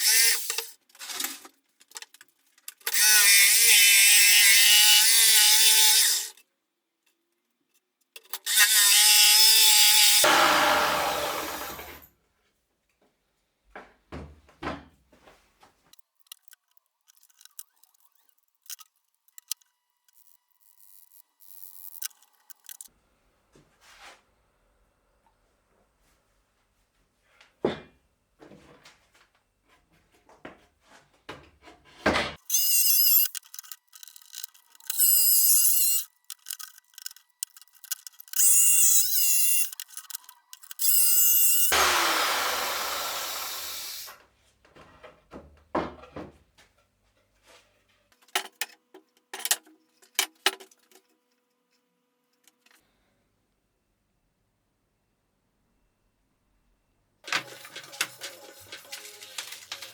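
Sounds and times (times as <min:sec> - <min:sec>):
power tools whining on plywood: 0:08.9 - 0:12.1, 0:40.8 - 0:44.1.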